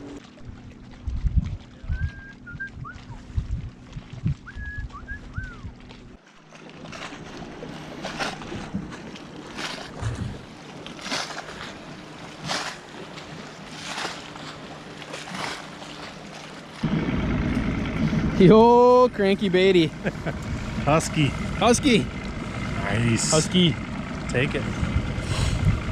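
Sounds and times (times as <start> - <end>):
low rumble: 0.0 - 6.2, 9.8 - 10.6, 16.8 - 25.9
water slapping boat hull: 0.0 - 25.9
water wash: 0.0 - 25.9
wind: 0.0 - 25.9.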